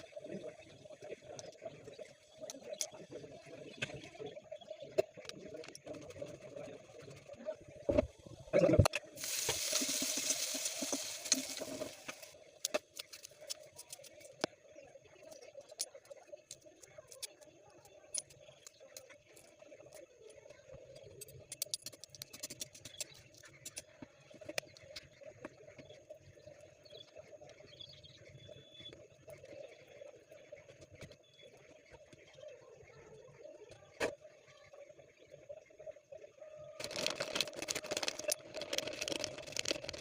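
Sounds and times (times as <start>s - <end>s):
hiss: 9.2s - 12.3s.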